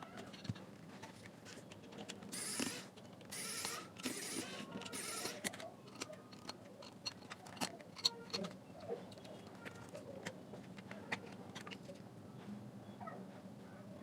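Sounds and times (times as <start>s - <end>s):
short scraping rasps: 2.3s - 8.6s.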